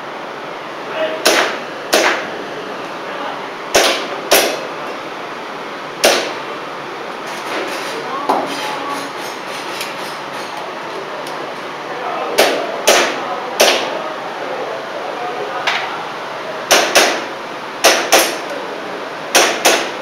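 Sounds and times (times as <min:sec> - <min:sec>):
airsoft pistol shots: 0:01.2 - 0:02.3, 0:03.7 - 0:04.6, 0:06.0 - 0:06.4, 0:16.7 - 0:18.4, 0:19.3 - 0:20.0.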